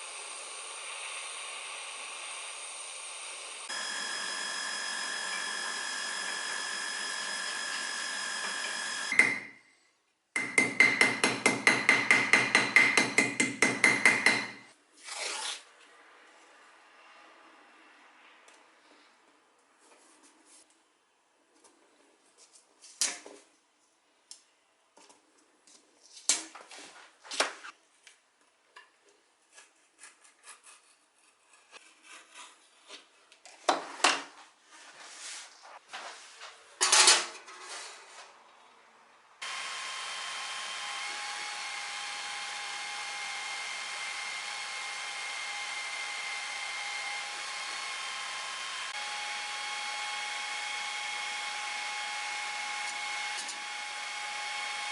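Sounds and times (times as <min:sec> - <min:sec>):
electric tool motor whining: 0:00.0 - 0:09.2, 0:39.4 - 0:54.9
hand tools knocking on wood: 0:10.4 - 0:14.7.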